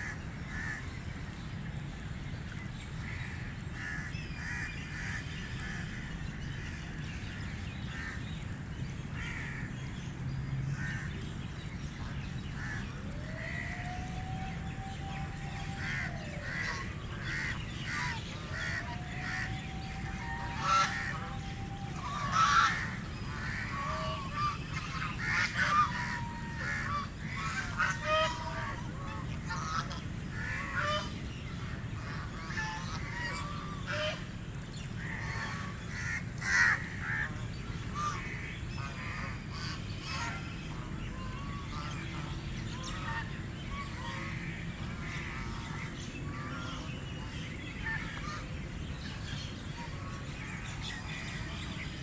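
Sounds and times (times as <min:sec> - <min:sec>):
ducks quacking: 0:20.4 - 0:31.2.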